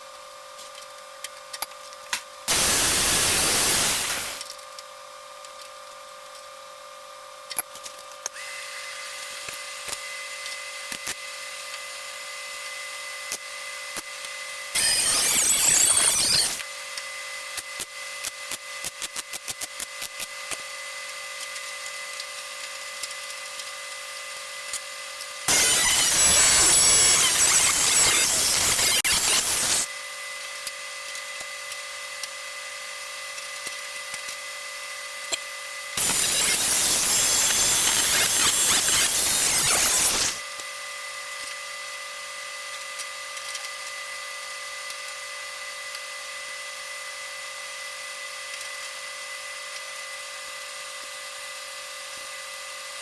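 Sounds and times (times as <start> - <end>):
electric power tool on sheet metal: 2.5 - 4.5, 8.2 - 11.7, 13.2 - 20.6, 22.7 - 31.8, 35.0 - 40.6
steady shop hum: 2.5 - 4.5, 14.6 - 16.9, 25.4 - 30.1, 35.9 - 40.5.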